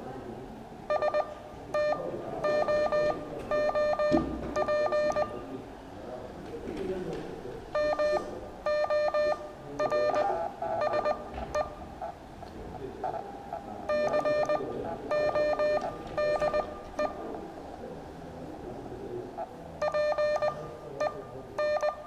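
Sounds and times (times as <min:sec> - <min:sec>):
morse code beeps: 0:00.9 - 0:05.4, 0:07.7 - 0:11.9, 0:13.4 - 0:17.2, 0:19.8 - 0:22.0.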